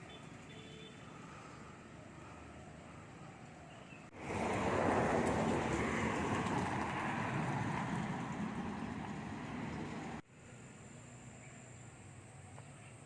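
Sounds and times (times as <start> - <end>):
passing road vehicle rushing: 0.0 - 10.2.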